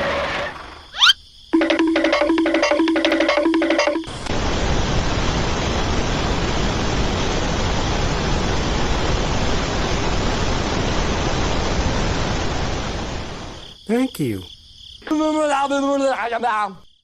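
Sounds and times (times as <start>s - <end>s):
music: 1.6s - 4.1s.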